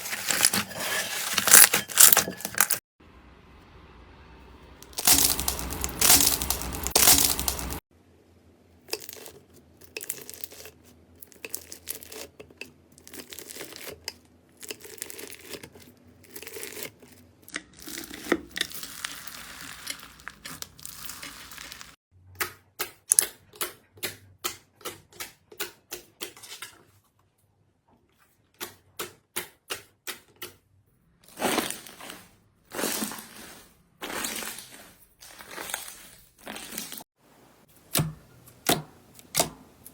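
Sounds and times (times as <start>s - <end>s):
slime crackling and crunching: 0.0s - 2.8s, 4.8s - 7.8s, 8.9s - 12.4s, 13.0s - 22.0s, 31.3s - 37.0s.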